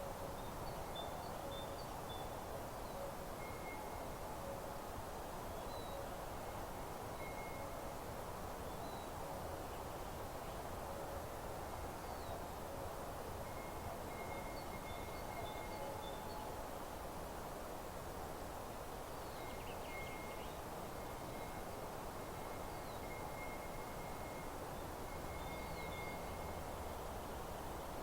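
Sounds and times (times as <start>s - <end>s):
open-air hiss: 0.0s - 28.0s
faint birdsong: 5.5s - 7.8s, 18.8s - 28.0s.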